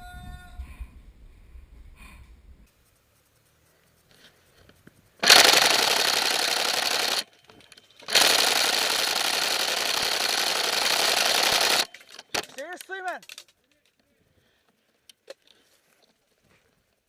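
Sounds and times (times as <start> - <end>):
airsoft gun firing full auto: 5.2 - 12.6.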